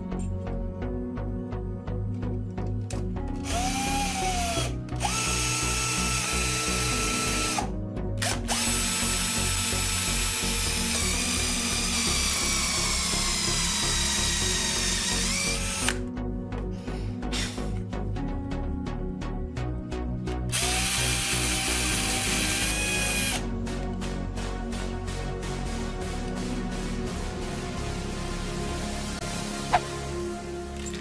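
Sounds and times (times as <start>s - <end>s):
background music with steady beat: 0.0s - 31.0s
electric drill whining: 3.4s - 16.0s, 20.5s - 23.5s.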